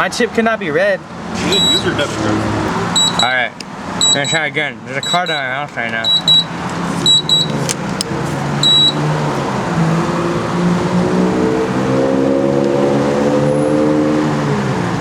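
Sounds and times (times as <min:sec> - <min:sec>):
card reader beep: 0:01.5 - 0:01.9, 0:03.0 - 0:03.4, 0:04.0 - 0:07.6, 0:08.6 - 0:09.0.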